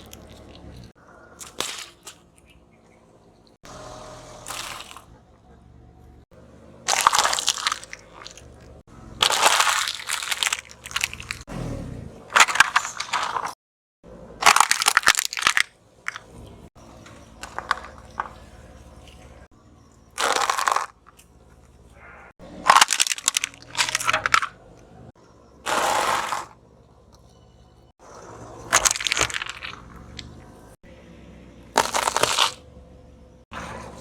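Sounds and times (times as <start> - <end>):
objects crushed under car tyre: 4.4 - 5.1, 6.9 - 11.5, 12.3 - 13.6, 14.4 - 21.8, 22.4 - 24.6, 25.6 - 26.6, 28.1 - 30.4, 31.7 - 32.6
sharp cracks: 31.8 - 32.6.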